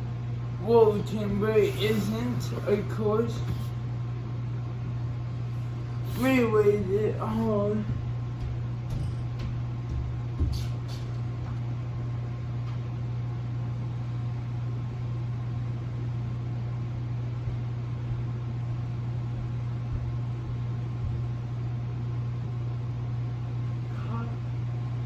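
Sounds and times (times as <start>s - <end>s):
low mechanical hum: 0.0s - 25.0s.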